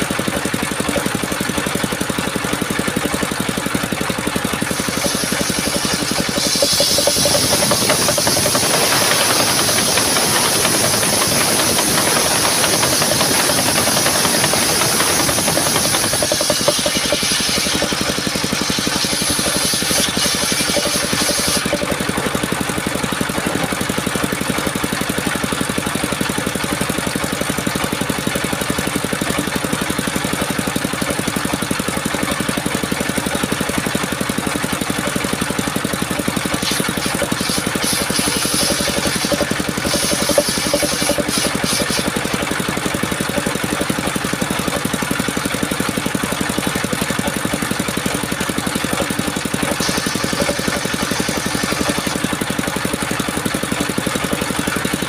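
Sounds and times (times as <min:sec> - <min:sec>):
sawmill engine running: 0:00.0 - 0:55.0
saw blade cutting wood: 0:02.7 - 0:24.0, 0:34.3 - 0:53.2.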